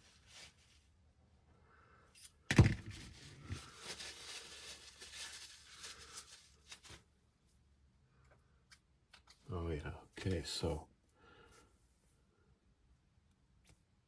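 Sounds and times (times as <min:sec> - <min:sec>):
rustling and crinkling: 0:00.0 - 0:01.1, 0:02.2 - 0:07.6.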